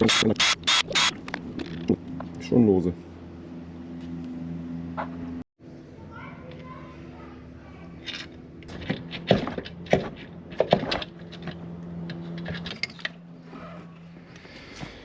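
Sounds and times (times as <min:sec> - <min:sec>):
metal clinks and scrapes: 0:12.2 - 0:13.2.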